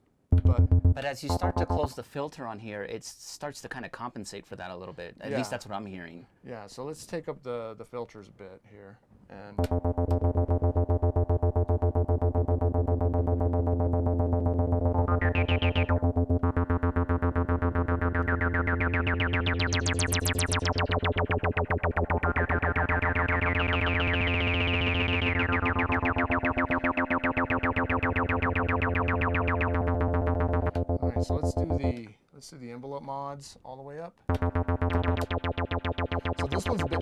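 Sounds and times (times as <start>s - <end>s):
squelchy bass synthesizer: 0.3s - 2.0s, 9.6s - 32.0s, 34.3s - 37.0s.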